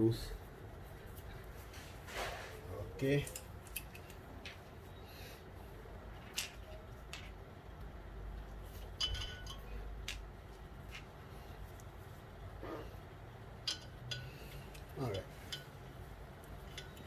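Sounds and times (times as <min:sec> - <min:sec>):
metal screws and tools clinking: 0:03.2 - 0:04.7, 0:06.1 - 0:07.4, 0:08.6 - 0:11.2, 0:13.6 - 0:17.0.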